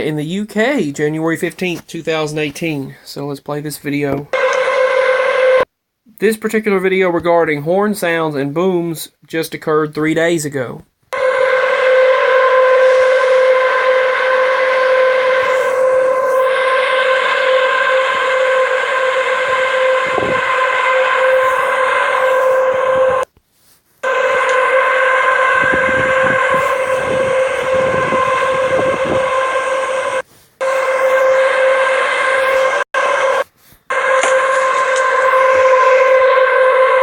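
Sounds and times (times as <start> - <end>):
horn-like drone: 4.3 - 5.7, 11.2 - 23.3, 24.0 - 37.0.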